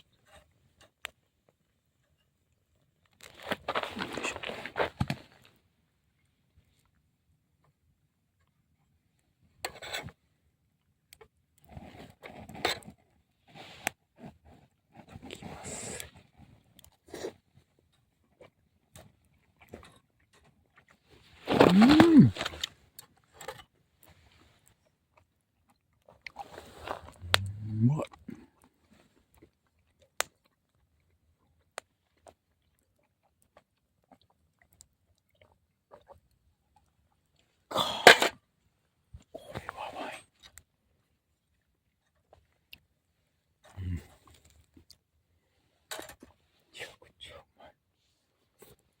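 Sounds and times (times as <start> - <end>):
person chewing: 21.5 - 22.7, 27.1 - 28.2.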